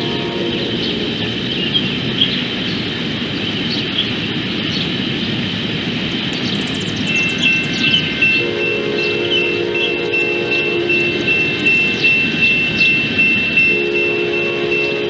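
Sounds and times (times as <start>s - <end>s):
train wheels rumbling on rails: 0.0s - 15.0s
high-pitched squealing: 7.0s - 15.0s.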